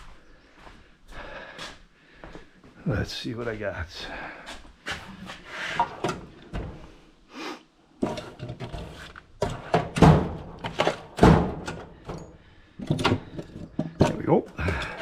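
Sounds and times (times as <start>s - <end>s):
hand tools clattering: 8.0s - 15.0s
sharp thunks: 9.4s - 12.2s.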